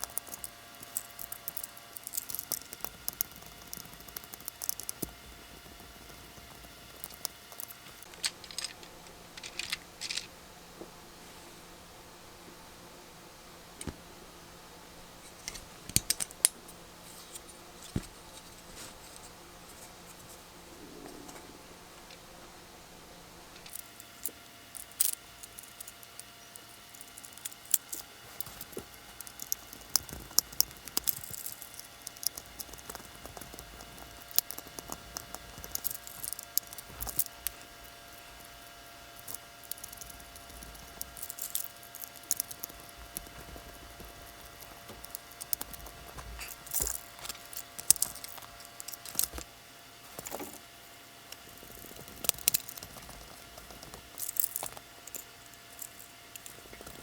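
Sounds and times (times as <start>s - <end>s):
hands and small tools clicking: 0.0s - 10.3s, 23.6s - 49.5s, 51.3s - 57.0s
faint steady hum: 0.0s - 57.0s.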